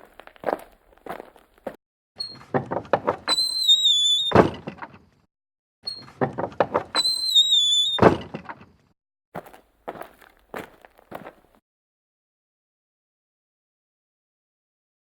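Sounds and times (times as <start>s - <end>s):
door banging shut: 2.2s - 5.1s, 5.9s - 8.8s
high wavering squeal: 3.3s - 4.4s, 7.0s - 8.0s.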